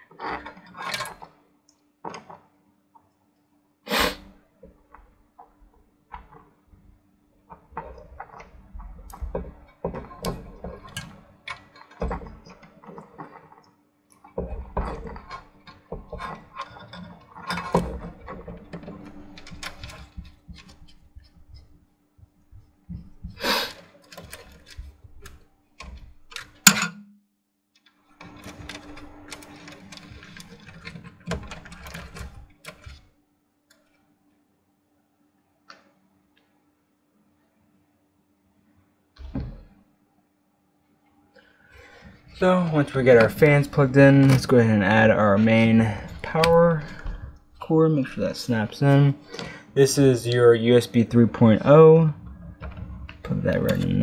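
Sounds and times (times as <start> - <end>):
knocks and cable rustling: 4.6 - 27.1, 27.8 - 33.1, 39.2 - 39.8, 41.8 - 54.0.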